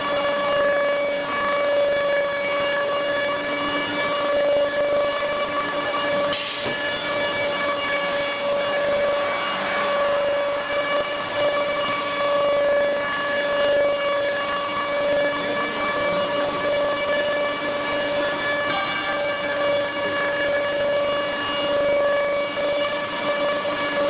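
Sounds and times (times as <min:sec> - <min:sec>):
router spindle whining: 0:00.0 - 0:24.0.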